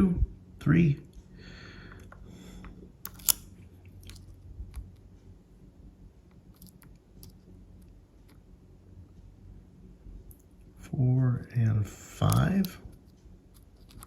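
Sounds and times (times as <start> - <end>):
lock pick ticking and scraping: 3.0 - 3.4, 13.5 - 14.0
lock pick clicking in padlock: 3.1 - 3.4.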